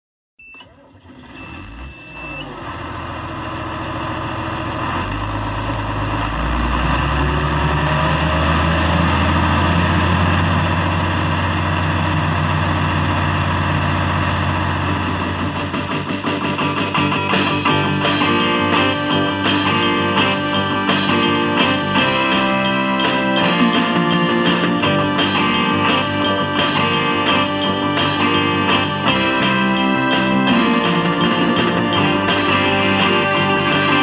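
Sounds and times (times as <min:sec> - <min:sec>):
high warning beep: 0:00.4 - 0:00.7, 0:01.4 - 0:02.5
large diesel engine revving: 0:01.0 - 0:15.8.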